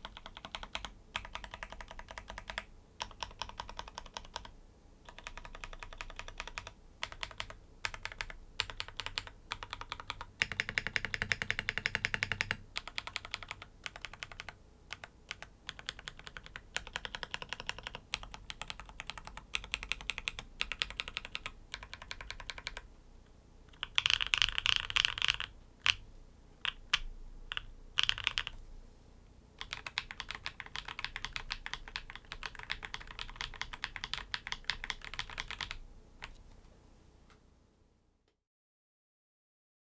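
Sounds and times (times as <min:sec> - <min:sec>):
typing on mechanical keyboard: 0:00.0 - 0:22.9, 0:23.7 - 0:26.0, 0:26.6 - 0:28.6, 0:29.6 - 0:36.4.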